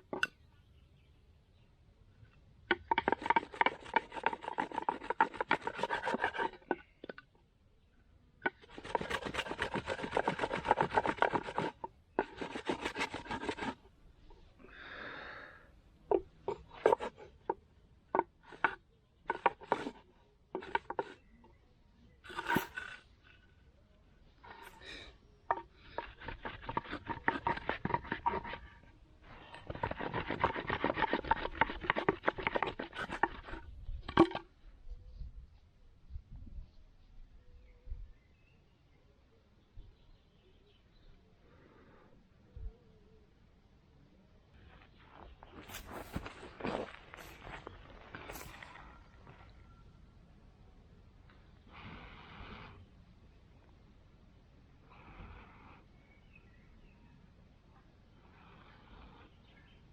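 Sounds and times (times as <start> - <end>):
cotton rubbing between wooden boards: 2.8 - 7.1, 8.4 - 13.8, 16.1 - 21.2, 24.5 - 33.6, 45.4 - 49.0.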